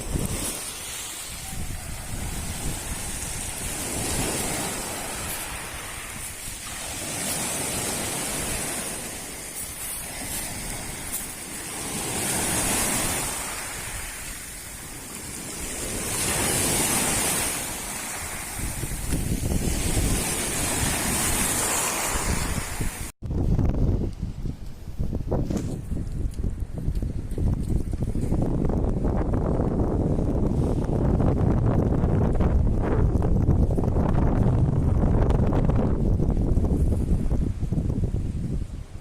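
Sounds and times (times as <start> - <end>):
sea surf washing ashore: 0.0 - 23.2
wind buffeting microphone: 0.0 - 39.0.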